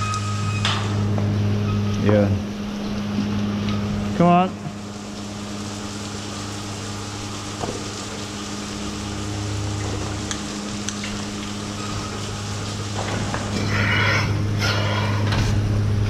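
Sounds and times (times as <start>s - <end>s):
machinery low hum: 0.0s - 16.0s
water spraying hiss: 4.2s - 15.6s.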